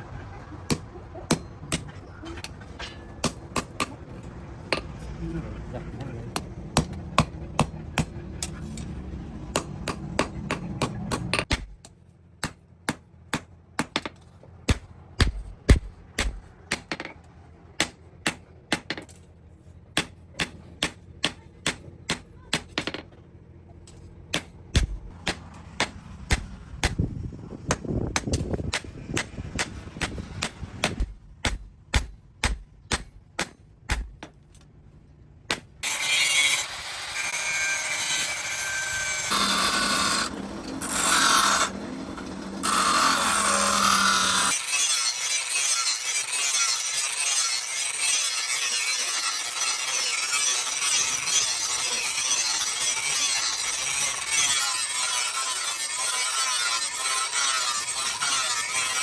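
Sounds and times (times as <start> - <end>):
hammer striking metal: 0.7 - 4.0, 9.5 - 17.2, 23.9 - 27.0, 27.7 - 34.4
metal rasping: 35.5 - 59.0.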